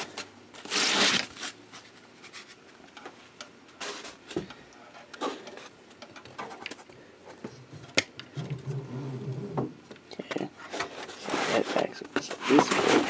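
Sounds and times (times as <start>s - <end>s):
foam scraping rub: 11.1s - 13.0s.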